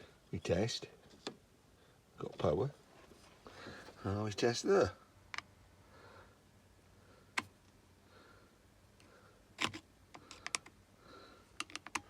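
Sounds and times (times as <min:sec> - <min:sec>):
small tools clicking on plastic: 0:09.6 - 0:10.8, 0:11.6 - 0:12.0.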